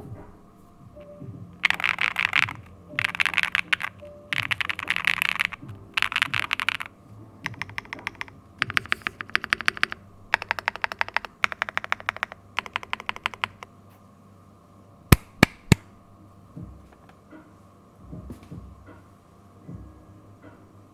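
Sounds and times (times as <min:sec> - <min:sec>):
loud keyboard clacks: 0:01.0 - 0:13.7
mechanical keyboard typing: 0:01.0 - 0:13.7.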